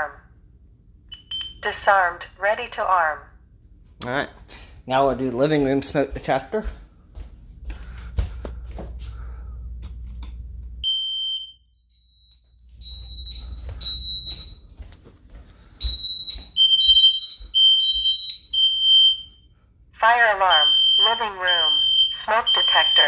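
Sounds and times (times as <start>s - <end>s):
smoke detector alarm beeps: 1.1s - 1.8s, 10.8s - 14.8s, 15.6s - 23.0s.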